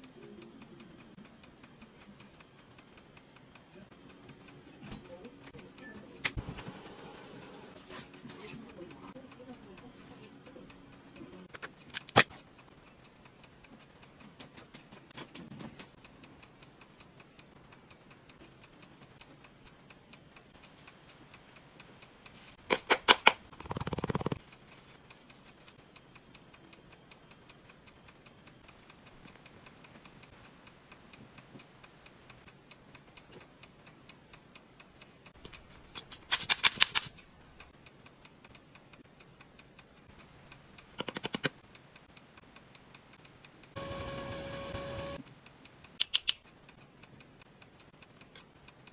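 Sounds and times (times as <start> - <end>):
faint even ticking: 0.0 - 6.2, 15.8 - 22.7, 23.5 - 36.0, 37.1 - 43.9, 45.1 - 48.9
loud rapid clicking: 22.6 - 24.5, 36.1 - 43.8.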